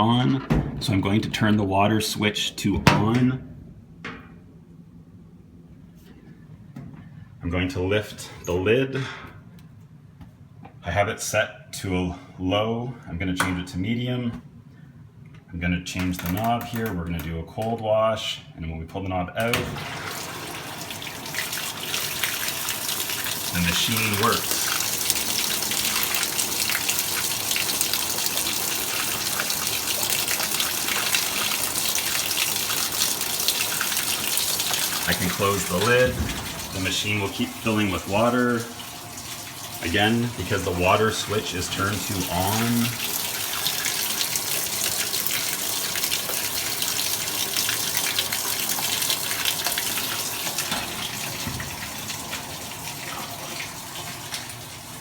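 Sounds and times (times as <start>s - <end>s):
water pouring into washing machine: 19.4s - 55.0s.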